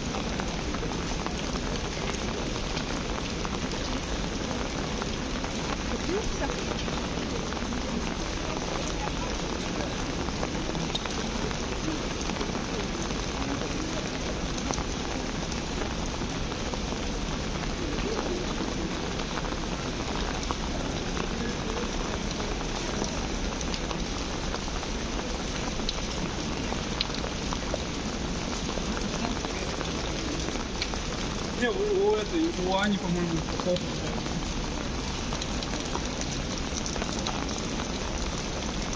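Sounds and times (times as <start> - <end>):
rain falling on street: 0.0 - 38.9.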